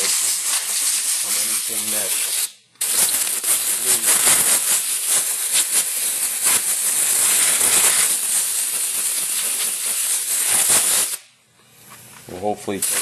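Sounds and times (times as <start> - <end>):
air blow gun hissing: 0.0 - 11.3, 12.6 - 13.0.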